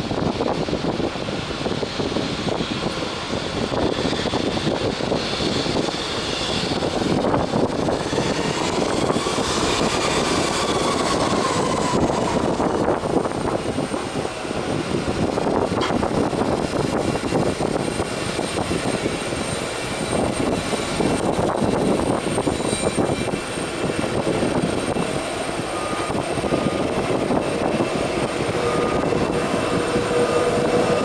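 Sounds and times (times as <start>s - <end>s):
jet engine rumble: 0.0s - 31.0s
faint high whine: 22.0s - 31.0s.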